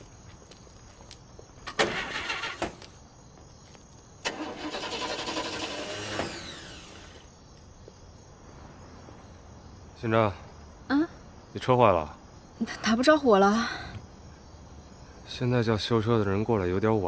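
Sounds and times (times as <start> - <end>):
car starter cranking: 1.7 - 2.8, 4.2 - 7.3.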